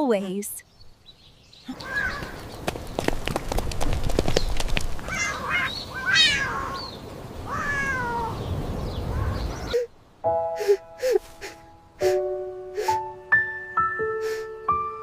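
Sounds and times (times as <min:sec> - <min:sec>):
cat meowing: 0:05.1 - 0:06.8, 0:07.5 - 0:08.4.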